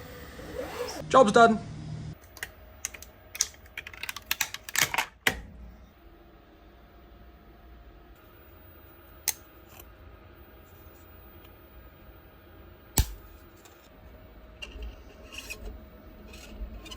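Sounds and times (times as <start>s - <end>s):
faint steady hum: 0.0s - 16.9s.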